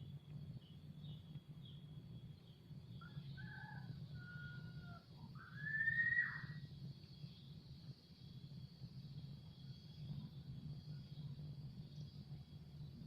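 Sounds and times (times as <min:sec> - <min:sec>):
steady low hum: 0:00.0 - 0:13.0
animal call: 0:03.3 - 0:06.6.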